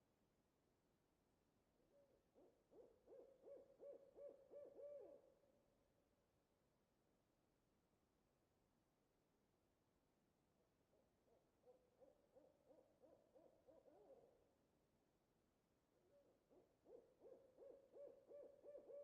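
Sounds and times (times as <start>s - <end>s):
owl hooting: 2.4s - 5.2s, 11.7s - 14.4s, 16.0s - 19.0s.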